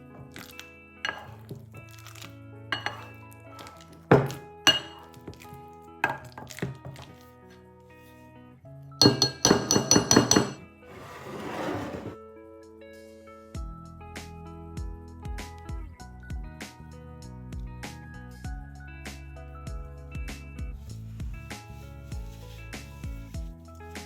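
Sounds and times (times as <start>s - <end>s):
background music: 0.0s - 24.0s
utensil clinking against bowl: 1.1s - 1.4s, 2.8s - 3.2s, 4.2s - 5.2s, 9.0s - 10.6s.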